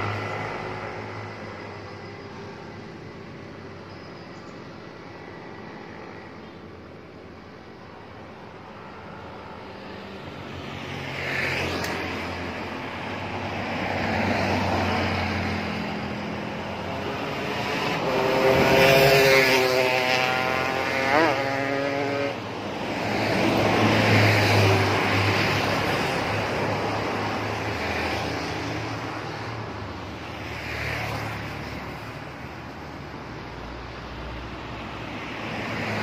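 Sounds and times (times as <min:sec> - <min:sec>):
heavy vehicles passing: 0:00.0 - 0:36.0
multi-tone air horn: 0:18.0 - 0:18.9, 0:19.6 - 0:22.4.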